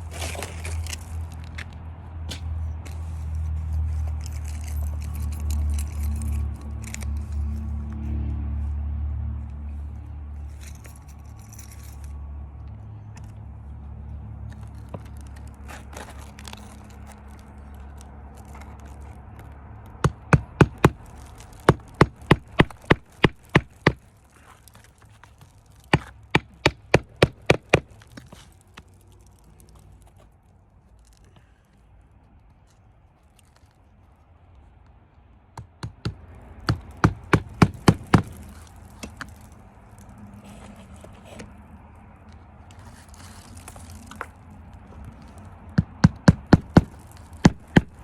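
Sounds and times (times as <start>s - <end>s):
hammer strikes: 35.6s - 38.4s.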